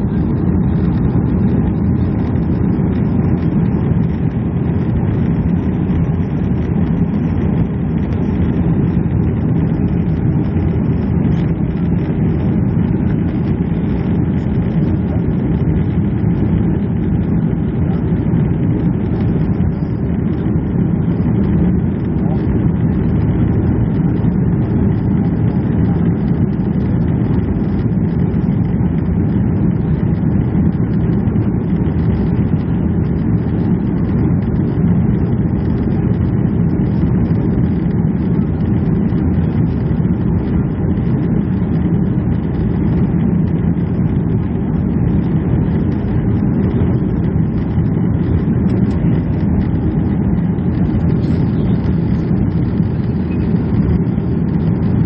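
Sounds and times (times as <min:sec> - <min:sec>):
jet engines rumbling in cabin: 0:00.0 - 0:55.0.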